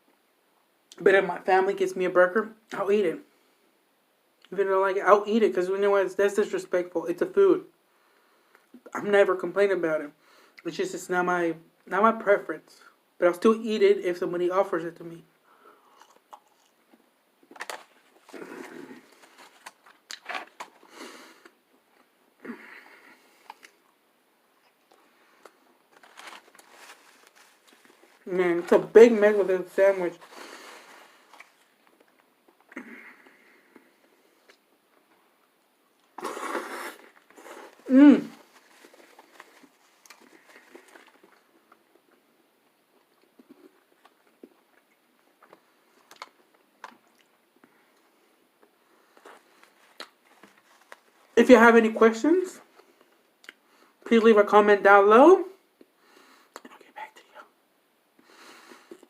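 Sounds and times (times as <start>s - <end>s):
person chewing: 15.8s - 22.1s, 23.2s - 28.2s, 35.8s - 42.3s
person chewing food: 15.8s - 22.1s.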